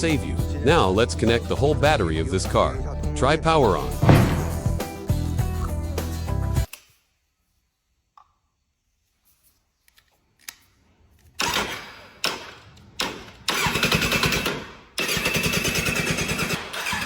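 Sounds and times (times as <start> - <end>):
electric starter cranking engine: 13.0 - 17.0.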